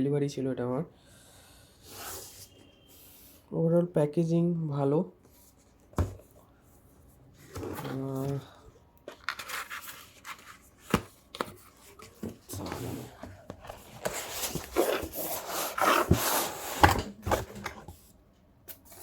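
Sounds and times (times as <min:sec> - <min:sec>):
cardboard rustling: 0:07.1 - 0:18.1
cardboard box rubbing and scraping: 0:12.4 - 0:17.5.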